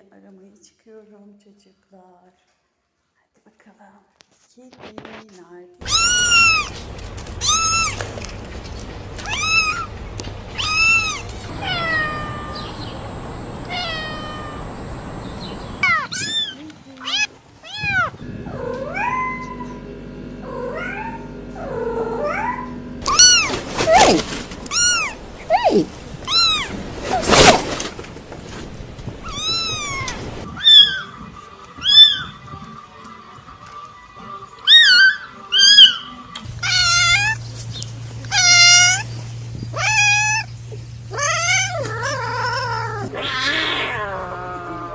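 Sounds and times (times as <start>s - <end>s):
kittens mewing: 5.8s - 19.8s, 20.4s - 28.0s, 29.0s - 31.1s, 34.6s - 37.5s, 38.2s - 44.9s.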